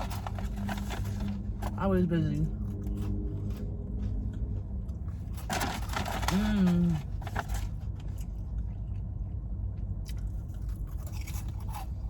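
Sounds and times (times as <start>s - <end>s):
low rumble: 0.0s - 10.9s
person chewing fries: 2.4s - 12.0s.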